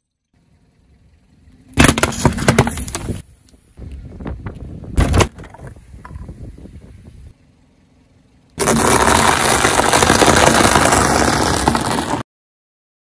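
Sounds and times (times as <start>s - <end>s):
car engine running: 0.3s - 3.2s, 5.5s - 12.2s
object crunching under tyre: 8.6s - 12.2s.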